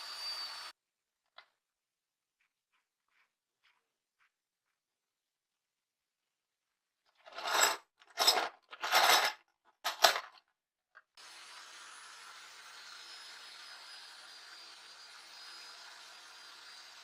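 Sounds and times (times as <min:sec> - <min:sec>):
faint high whine: 0:00.0 - 0:00.7.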